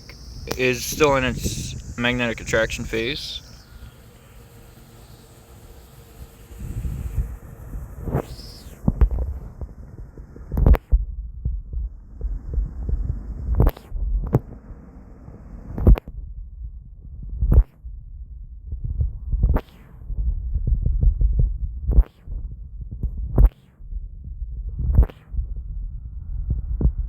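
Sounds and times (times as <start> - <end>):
low rumbling on microphone: 6.6 - 27.0.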